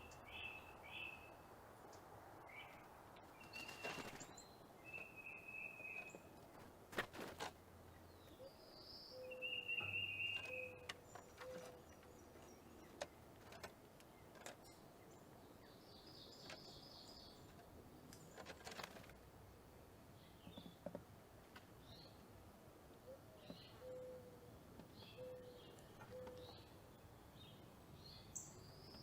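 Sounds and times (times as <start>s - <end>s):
faint background noise: 0.0s - 29.0s
soft bird chirps and clicks: 1.8s - 6.5s, 9.2s - 19.2s, 20.2s - 22.2s, 22.9s - 24.1s, 24.7s - 26.8s, 28.4s - 29.0s
bird trills: 8.4s - 12.0s, 25.0s - 26.6s.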